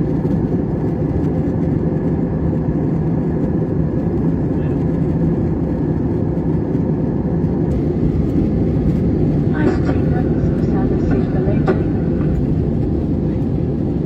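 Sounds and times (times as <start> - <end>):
engine hum: 0.2 - 14.0
steady low tones: 7.0 - 14.0.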